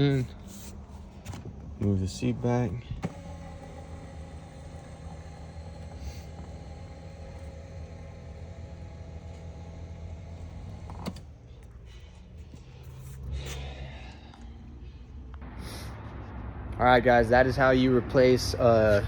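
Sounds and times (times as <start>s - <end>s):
seat motor click: 2.9s - 11.3s
power seat motor running: 2.9s - 11.4s.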